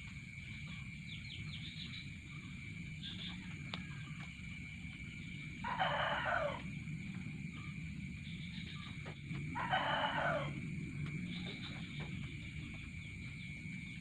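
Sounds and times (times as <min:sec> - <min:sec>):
low rumble: 0:00.0 - 0:14.0
rooster crowing: 0:05.4 - 0:07.2, 0:09.4 - 0:10.8.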